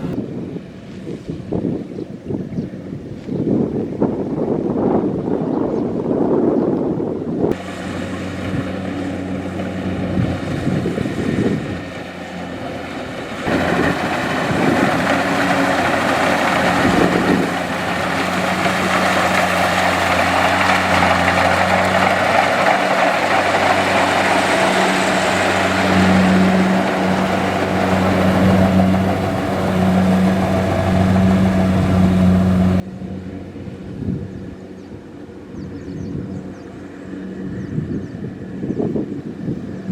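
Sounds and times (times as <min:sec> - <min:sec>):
combine harvester running: 0:07.5 - 0:39.4.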